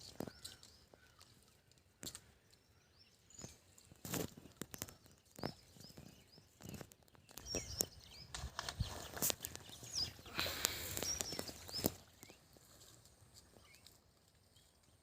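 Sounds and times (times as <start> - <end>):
birds chirping faintly: 0.0 - 15.0
rustles: 3.3 - 15.0.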